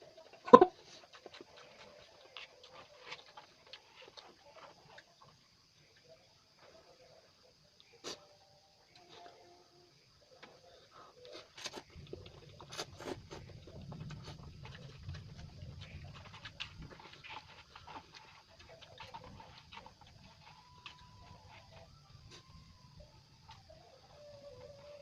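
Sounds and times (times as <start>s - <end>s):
person chewing noodles: 0.3s - 5.0s.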